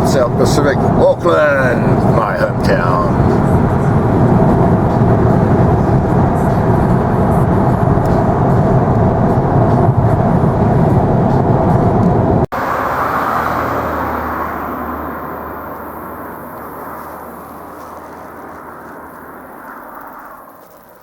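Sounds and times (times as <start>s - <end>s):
moving car rumble: 0.0s - 21.0s
soft rushing noise: 0.0s - 21.0s.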